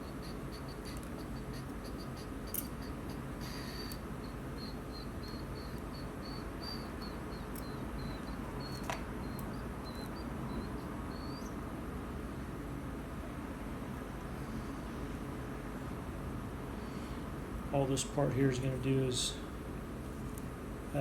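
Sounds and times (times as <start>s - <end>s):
small bird chirping: 0.0s - 11.7s.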